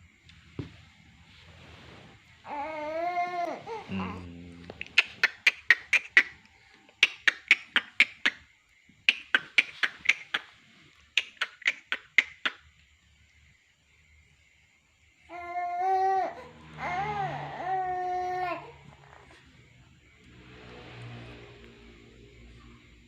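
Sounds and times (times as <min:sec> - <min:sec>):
baby fussing cry: 0:02.5 - 0:04.2, 0:15.3 - 0:19.3
rapid clicking chirps: 0:04.8 - 0:12.9.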